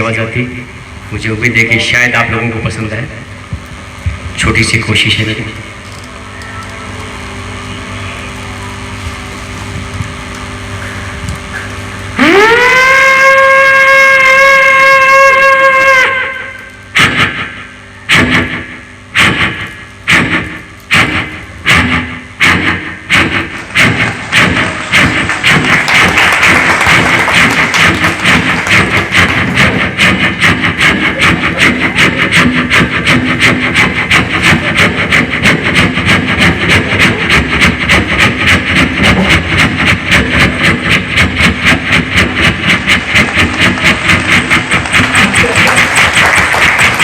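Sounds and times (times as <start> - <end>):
man imitating steam train chuffs: 17.0 - 25.7, 27.4 - 45.9.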